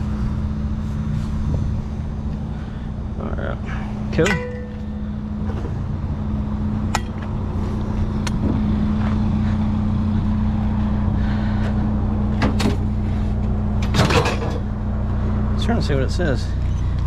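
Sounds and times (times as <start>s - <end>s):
vehicle engine idling: 0.0s - 17.0s
sharp knocks and clanks: 4.2s - 5.8s, 6.9s - 7.3s, 12.4s - 12.8s, 13.8s - 14.7s.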